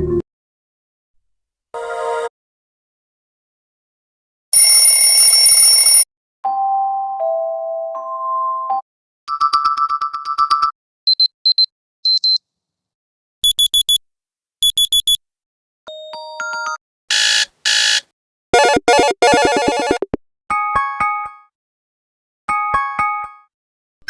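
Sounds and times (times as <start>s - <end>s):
phone alarm tones: 4.6s - 6.0s, 18.6s - 20.1s
electronic beeps: 18.6s - 20.2s.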